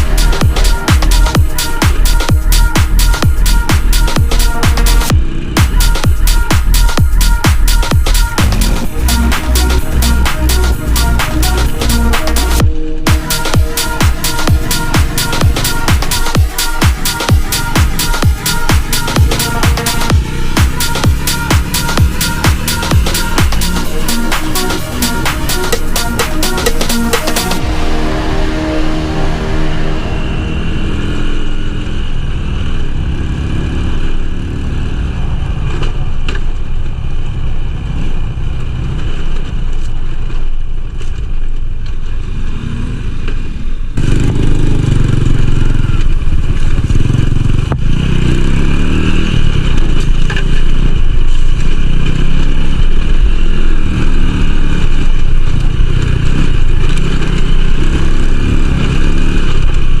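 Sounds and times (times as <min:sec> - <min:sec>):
small motorcycle engine running: 0:13.3 - 0:26.2, 0:42.1 - 1:00.0.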